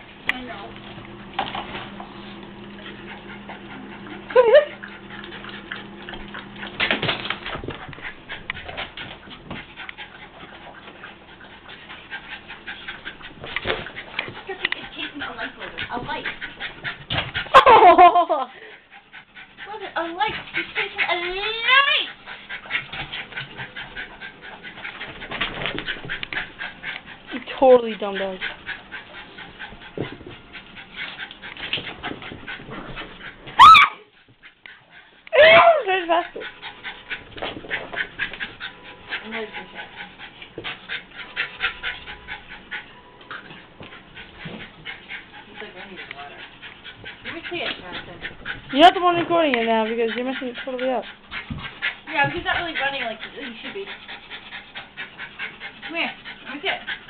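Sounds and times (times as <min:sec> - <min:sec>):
dogs panting: 0:00.0 - 0:57.0
paws clicking and scuffling: 0:00.0 - 0:57.0
dog yelping: 0:33.6 - 0:34.1.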